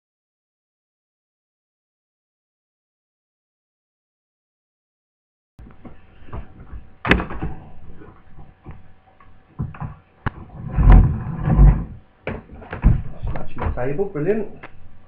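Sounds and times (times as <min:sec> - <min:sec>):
heavy thumps: 0:05.6 - 0:08.9, 0:09.6 - 0:14.0.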